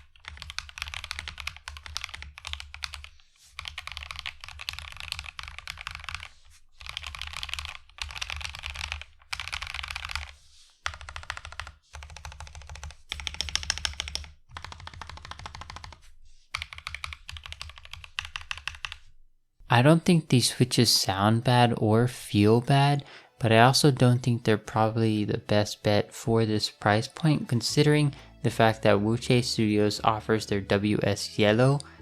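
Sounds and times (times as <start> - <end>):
typing on mechanical keyboard: 0.0 - 19.0.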